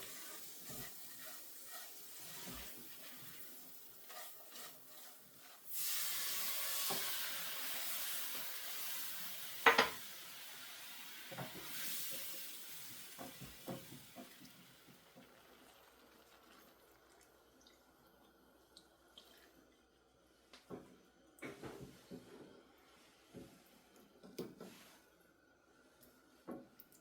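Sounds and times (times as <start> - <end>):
food sizzling in a pan: 0.0 - 16.8.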